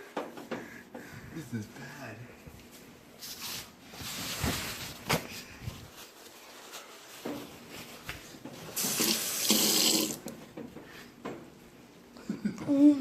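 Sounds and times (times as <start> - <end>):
tap water running into sink: 8.8 - 10.3.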